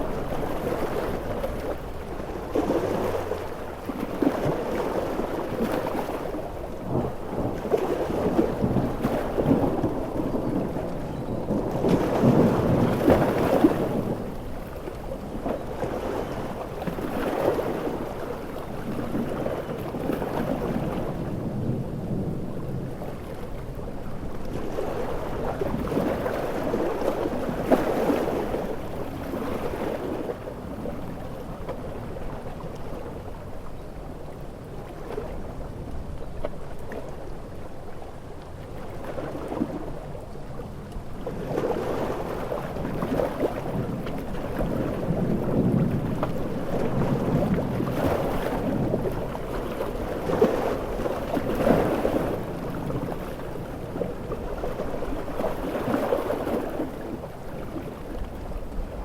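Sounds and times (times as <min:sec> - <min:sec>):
large ocean waves surging: 0:00.0 - 0:59.0.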